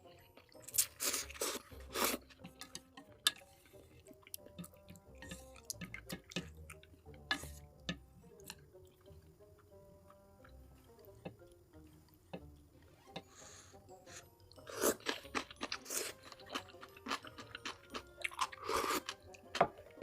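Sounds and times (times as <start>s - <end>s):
wet chewing and mouth sounds: 0.0s - 9.7s, 14.1s - 20.0s
faint background music: 0.0s - 20.0s
slurping: 0.6s - 7.7s.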